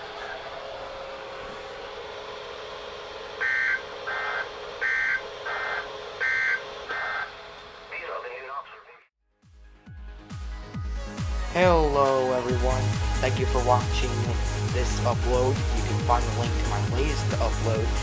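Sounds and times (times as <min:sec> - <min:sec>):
steady low hum: 0:00.0 - 0:08.8, 0:11.7 - 0:18.0
shrill two-tone digital bursts: 0:03.4 - 0:07.3.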